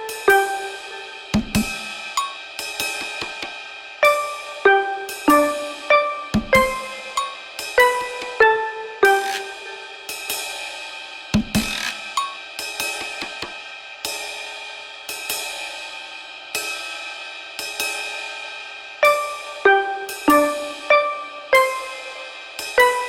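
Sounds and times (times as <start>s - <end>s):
keyboard notes: 0.0s - 1.3s, 4.0s - 10.1s, 19.0s - 23.0s
drum kit: 0.0s - 10.6s, 11.4s - 14.4s, 19.0s - 23.0s.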